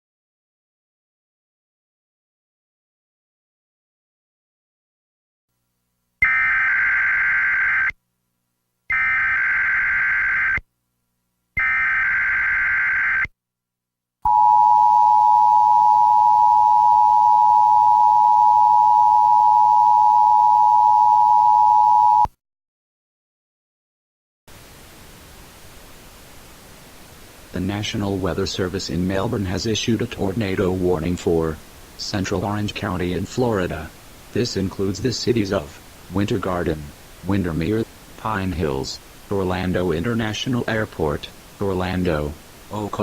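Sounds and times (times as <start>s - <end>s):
warbling digital header bursts: 6.2s - 7.9s
steady two-tone attention signal: 14.3s - 22.3s.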